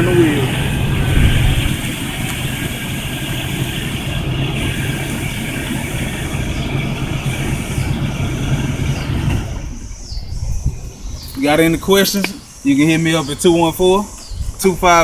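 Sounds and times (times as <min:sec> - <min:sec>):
car engine idling: 0:00.0 - 0:10.1.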